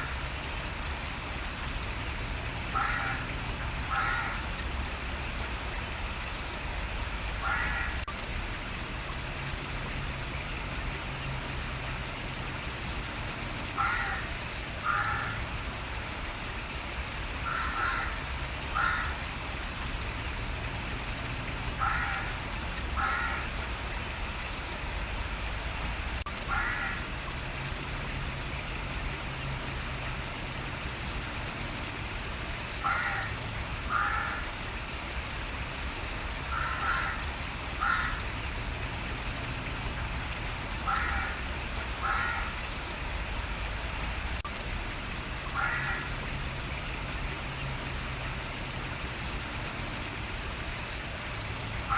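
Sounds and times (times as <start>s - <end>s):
running water: 0.0s - 51.9s
crow cawing: 2.8s - 3.2s, 3.9s - 4.4s, 7.4s - 8.0s, 13.8s - 15.4s, 17.4s - 18.2s, 18.8s - 19.2s, 21.8s - 22.4s, 23.0s - 23.5s, 26.5s - 27.0s, 32.8s - 34.4s, 36.5s - 37.2s, 37.8s - 38.2s, 40.9s - 41.4s, 42.0s - 42.6s, 45.5s - 46.1s.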